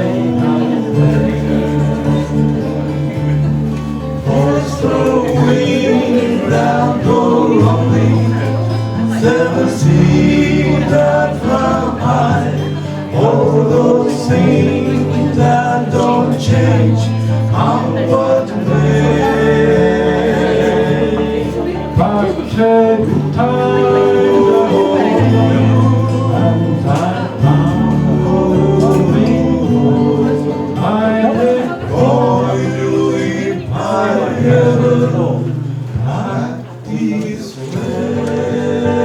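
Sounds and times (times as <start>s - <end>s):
person singing folk song: 0.0s - 39.0s.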